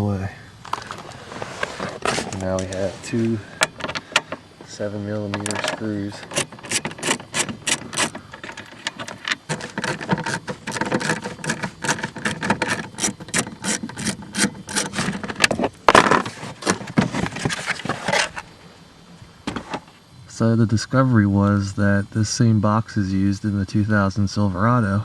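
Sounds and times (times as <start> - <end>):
ratchet clicking rapidly: 5.4 - 15.1.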